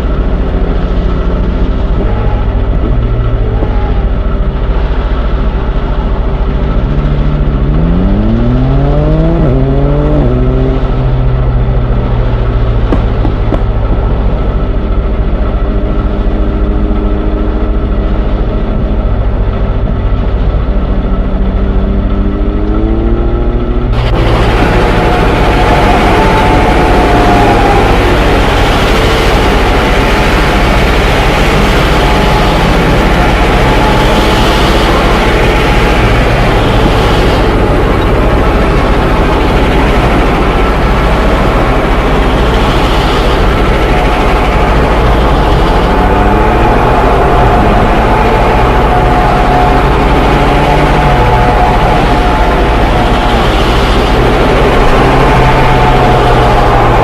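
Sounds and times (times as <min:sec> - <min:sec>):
train diesel engine revving: 0:20.6 - 0:57.0.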